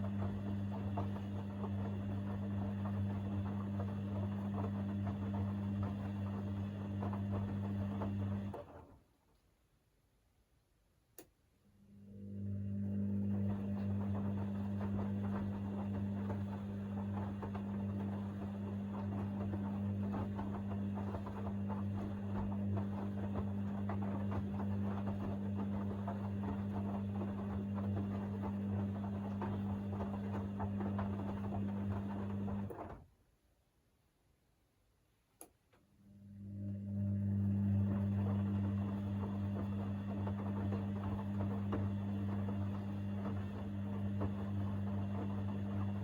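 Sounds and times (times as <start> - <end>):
washing machine motor hum: 0.0 - 9.2, 11.6 - 33.2, 35.9 - 46.0.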